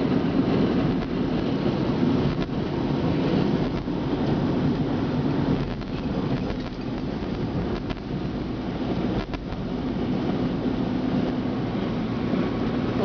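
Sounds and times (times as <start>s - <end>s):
engine and tyre rumble: 0.0s - 13.0s.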